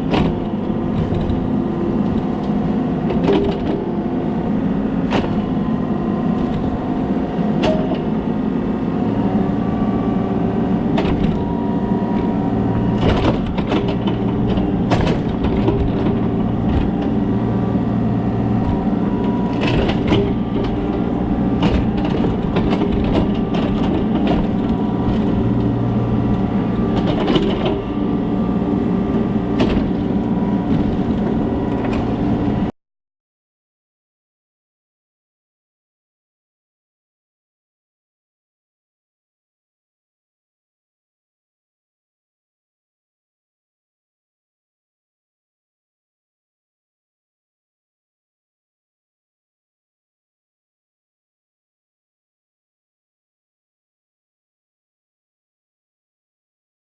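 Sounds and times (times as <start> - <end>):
excavator diesel engine straining: 0.0 - 32.7.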